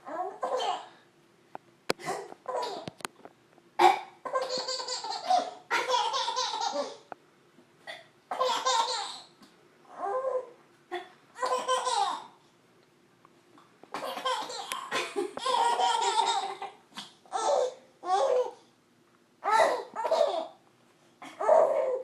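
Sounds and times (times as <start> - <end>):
baby laughing: 2.5 - 2.9, 4.2 - 7.1, 8.3 - 9.3, 11.4 - 12.4, 13.9 - 18.6, 19.4 - 20.6, 21.2 - 22.0.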